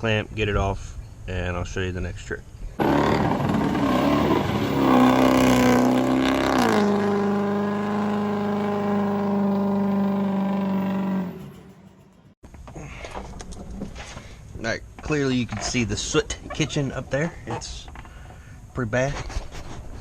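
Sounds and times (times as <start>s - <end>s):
motor running and winding down: 2.8s - 12.1s.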